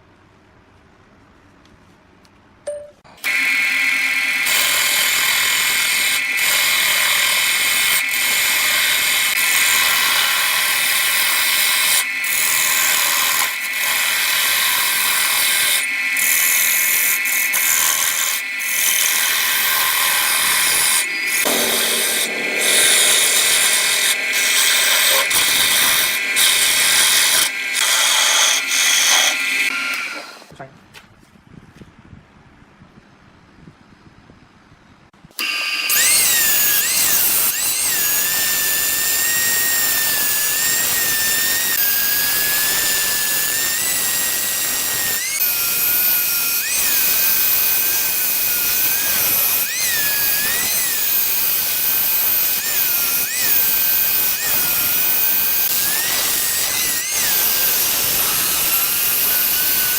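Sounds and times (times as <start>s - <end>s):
turning tool cutting wood: 3.2s - 30.5s, 35.4s - 59.9s
wood lathe whining: 3.2s - 30.5s, 35.4s - 59.9s.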